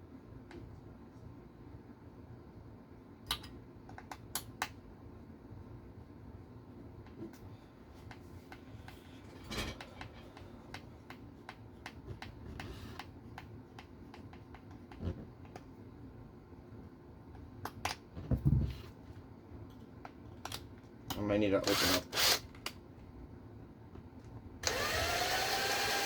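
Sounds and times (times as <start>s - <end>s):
clicks and taps of small parts: 3.2s - 4.8s.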